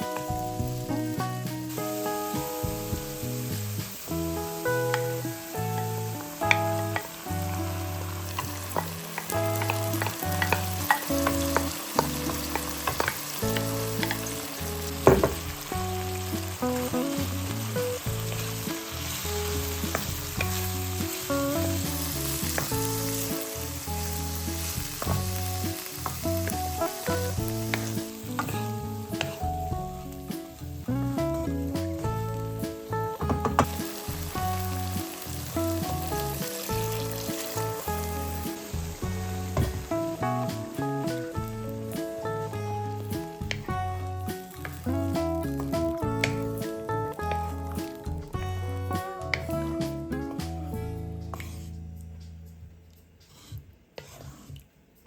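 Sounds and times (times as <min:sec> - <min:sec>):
food sizzling in a frying pan: 0:00.0 - 0:51.7
background music: 0:00.0 - 0:53.4
utensil tapping and scraping: 0:51.3 - 0:51.8, 0:53.2 - 0:54.7.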